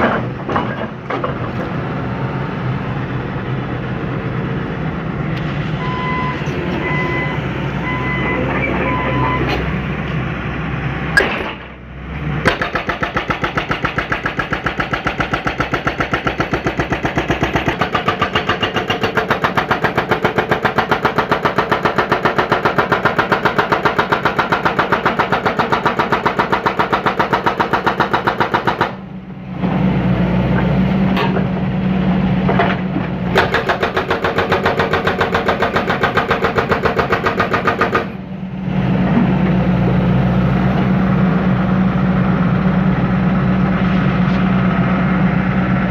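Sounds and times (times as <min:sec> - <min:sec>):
excavator diesel engine running: 0:00.0 - 0:45.9.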